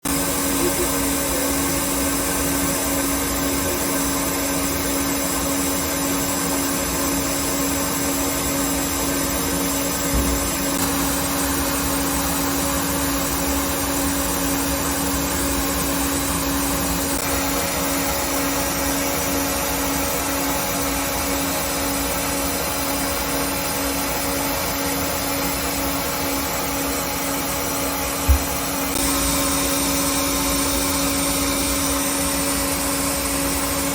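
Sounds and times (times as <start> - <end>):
lathe machine hum: 0.0 - 33.9
short low thump: 10.1 - 10.5, 28.3 - 28.6.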